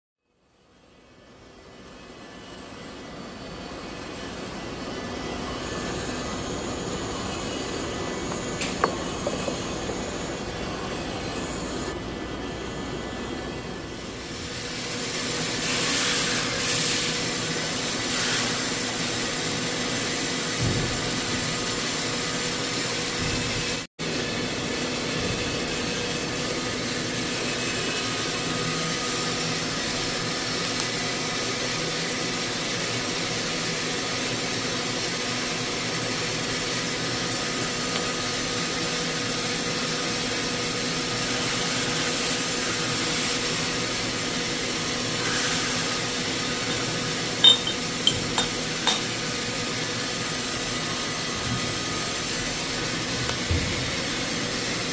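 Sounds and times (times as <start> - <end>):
milling machine whine: 0.4 - 54.9
hiss of metal cutting: 14.0 - 23.0, 37.5 - 53.0.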